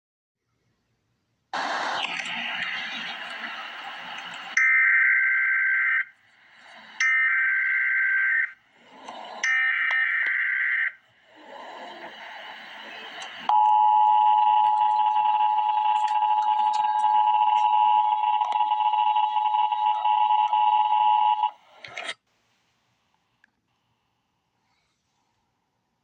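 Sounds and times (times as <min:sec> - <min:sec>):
hiss: 0:01.6 - 0:04.1
two-tone attention signal: 0:12.8 - 0:21.5.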